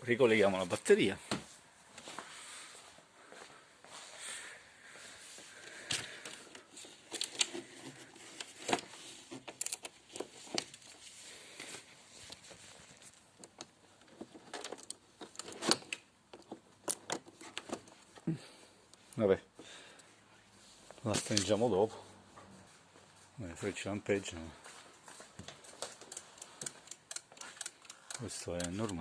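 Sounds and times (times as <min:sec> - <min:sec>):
tools clicking on battery terminal: 0:26.0 - 0:29.0.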